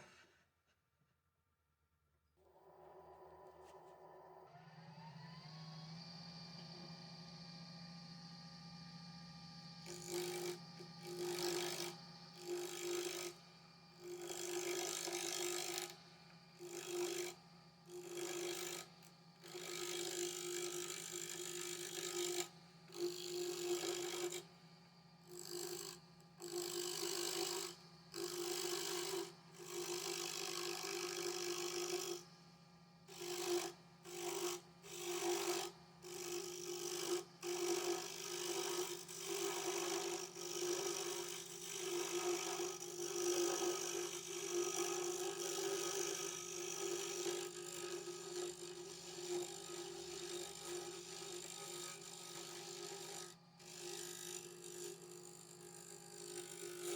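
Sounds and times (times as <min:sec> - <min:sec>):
power tool cutting wood: 0:02.8 - 0:24.5, 0:25.2 - 0:32.3, 0:33.1 - 0:56.9.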